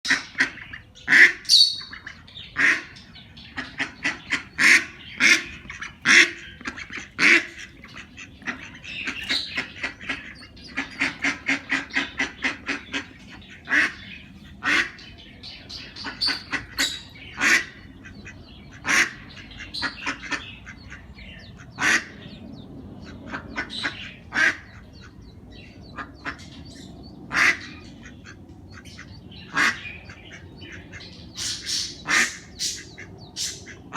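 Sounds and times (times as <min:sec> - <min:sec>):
ducks quacking: 0:00.0 - 0:33.9
other birds calling: 0:00.1 - 0:33.9.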